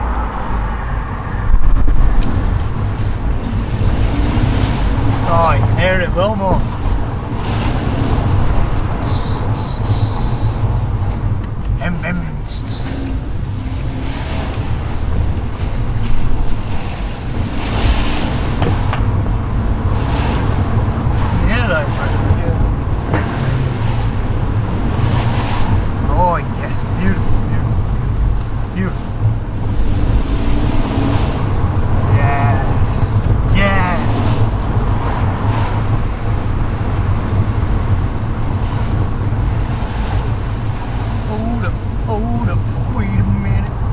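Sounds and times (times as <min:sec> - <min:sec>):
car engine driving: 0:00.0 - 0:43.9
road noise: 0:00.0 - 0:43.9
blow-off valve hiss: 0:09.0 - 0:10.7.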